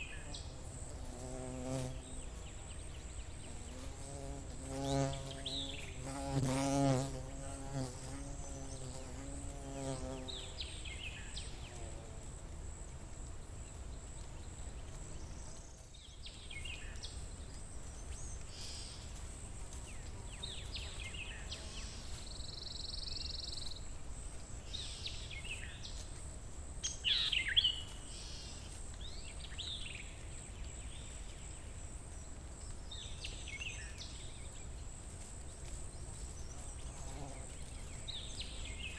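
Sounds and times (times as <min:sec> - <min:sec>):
buzzing insect flying: 0:03.5 - 0:10.6.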